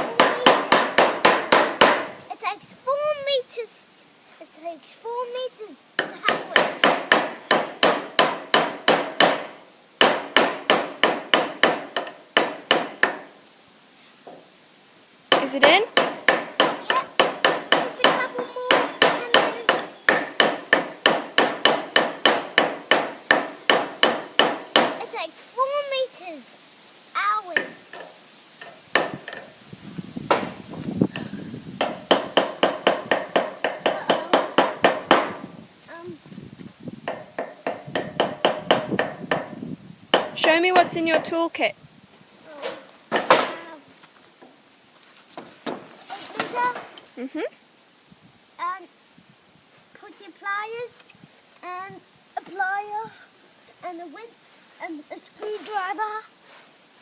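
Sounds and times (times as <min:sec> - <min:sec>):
hammer driving a nail: 0:00.2 - 0:02.1, 0:06.0 - 0:13.3, 0:15.3 - 0:25.0, 0:27.6 - 0:29.5, 0:30.3 - 0:30.6, 0:31.2 - 0:35.4, 0:37.1 - 0:41.3, 0:43.1 - 0:43.6.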